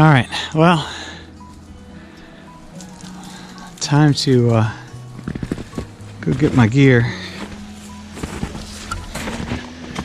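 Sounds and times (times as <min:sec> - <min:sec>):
footsteps crunching in snow: 0:02.6 - 0:10.0.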